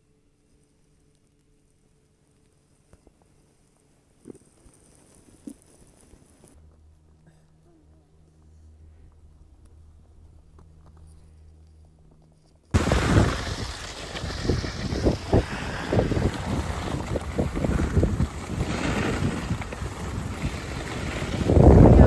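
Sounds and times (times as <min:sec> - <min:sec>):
faint low hum: 0:00.0 - 0:12.7
wind buffeting microphone: 0:12.8 - 0:22.0.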